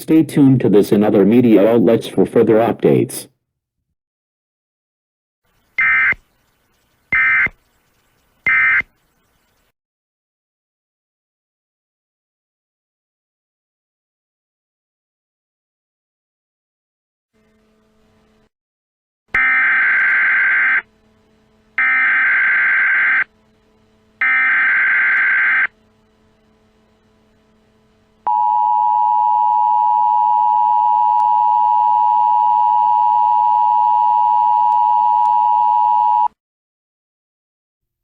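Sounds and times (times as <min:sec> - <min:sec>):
screechy digital data tones: 0:05.5 - 0:09.7, 0:21.8 - 0:23.3, 0:24.2 - 0:25.7
two-tone attention signal: 0:28.3 - 0:36.3.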